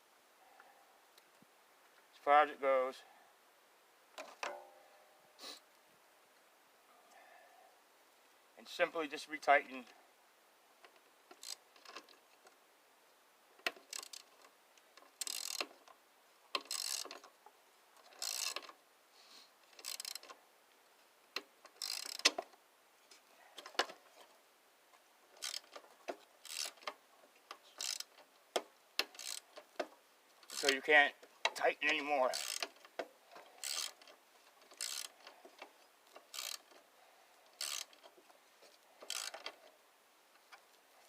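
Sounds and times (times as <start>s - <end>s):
ratchet wrench clicking: 11.4s - 11.6s, 13.9s - 14.3s, 15.2s - 15.7s, 16.6s - 17.2s, 18.2s - 18.7s, 19.8s - 20.3s, 21.8s - 22.4s, 25.4s - 25.8s, 26.4s - 26.9s, 27.8s - 28.1s, 29.0s - 29.7s, 30.4s - 30.8s, 32.3s - 32.8s, 33.6s - 34.1s, 34.7s - 35.2s, 36.2s - 36.7s, 37.6s - 38.0s, 39.0s - 39.5s.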